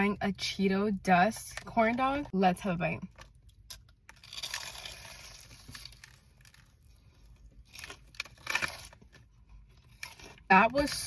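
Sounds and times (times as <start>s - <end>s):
crunching bite of fried snack: 3.7s - 6.8s.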